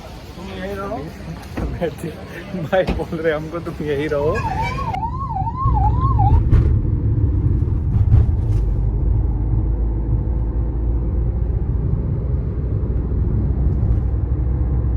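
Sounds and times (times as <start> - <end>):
car rumbling on road: 0.0 - 14.9
wailing siren: 4.4 - 6.8.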